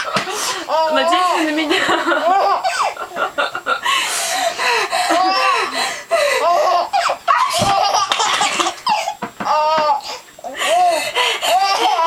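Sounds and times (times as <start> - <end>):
small child laughing: 0.0 - 3.8, 5.1 - 5.7, 6.4 - 10.0.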